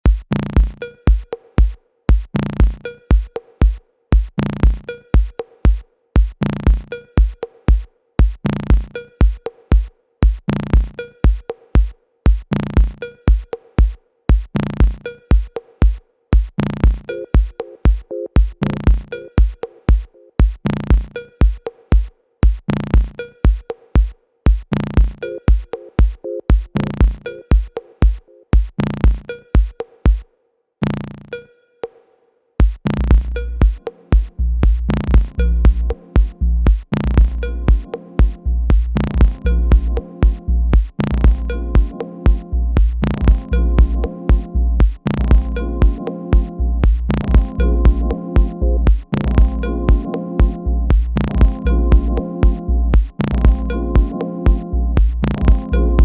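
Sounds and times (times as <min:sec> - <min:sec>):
electronic music with deep beat: 0:00.1 - 0:30.2, 0:32.6 - 0:56.0
held low tone: 0:33.2 - 0:56.0.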